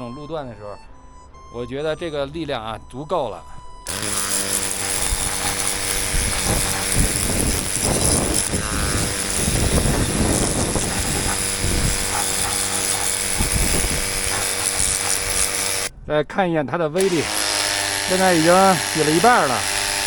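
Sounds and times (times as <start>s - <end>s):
pump motor humming: 3.9s - 15.9s, 17.0s - 20.0s
water jet hissing on car: 4.2s - 15.9s.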